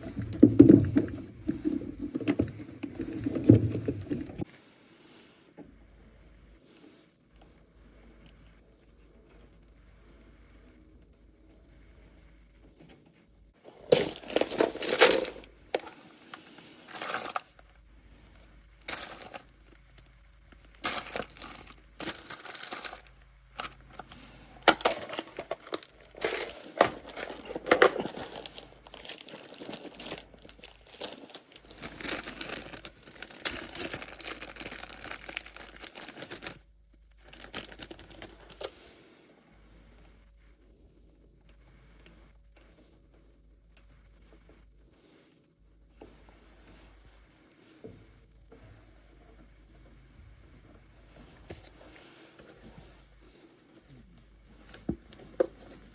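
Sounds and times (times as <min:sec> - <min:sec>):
rustling and crinkling handling noise: 0:00.0 - 0:04.6, 0:13.6 - 0:39.1, 0:46.2 - 0:55.9
faint steady hum: 0:00.0 - 0:55.9.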